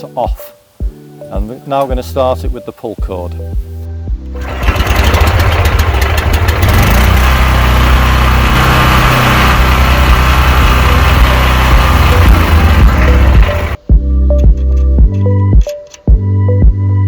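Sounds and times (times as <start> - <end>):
petrol engine running: 4.4 - 13.8.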